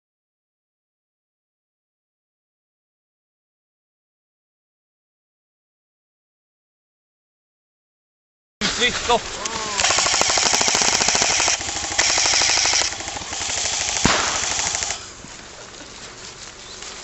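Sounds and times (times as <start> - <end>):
airsoft guns firing bursts: 9.7 - 15.1.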